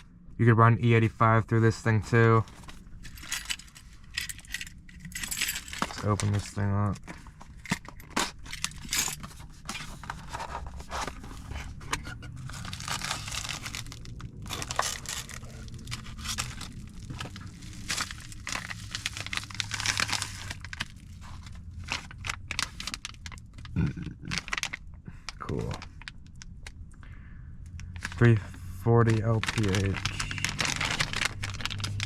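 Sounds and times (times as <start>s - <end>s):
low steady hum: 0.0s - 32.0s
cardboard and wrapping tearing: 9.9s - 24.8s, 29.0s - 32.0s.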